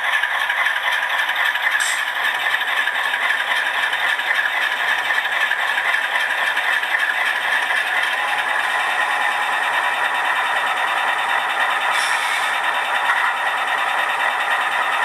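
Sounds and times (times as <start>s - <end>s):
diesel engine sound through small speaker: 0.0s - 15.0s.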